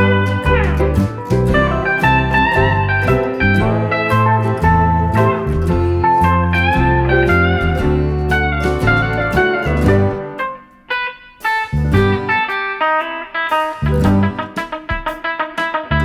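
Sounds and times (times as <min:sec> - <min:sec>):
bass line: 0:00.0 - 0:10.4, 0:11.7 - 0:12.4, 0:13.8 - 0:14.4
guitar with sliding notes: 0:00.0 - 0:16.0.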